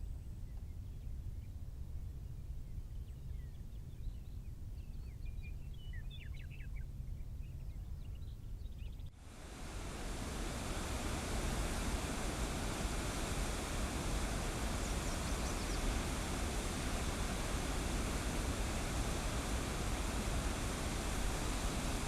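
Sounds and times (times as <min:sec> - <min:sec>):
low wind rumble: 0:09.3 - 0:22.0
waterfall rushing: 0:09.3 - 0:22.0
birds chirping: 0:10.4 - 0:22.0.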